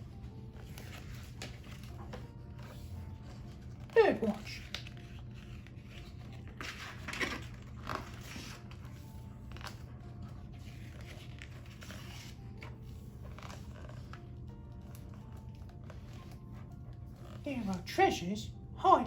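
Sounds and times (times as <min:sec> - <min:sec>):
book pages rustling: 0:00.0 - 0:17.9.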